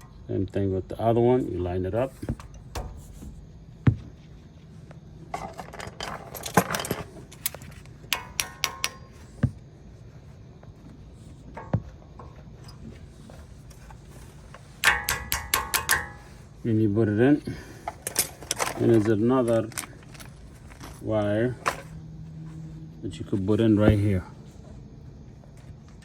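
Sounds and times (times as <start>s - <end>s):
metal brake parts clinking: 5.3s - 9.5s, 11.3s - 16.5s, 17.7s - 22.0s
small metal parts ringing: 14.8s - 16.4s.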